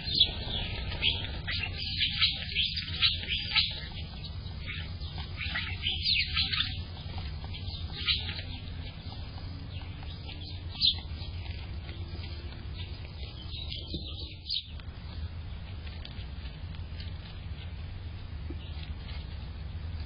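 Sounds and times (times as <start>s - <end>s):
small birds chirping: 0.0s - 20.0s
steady low rumble: 0.0s - 20.0s.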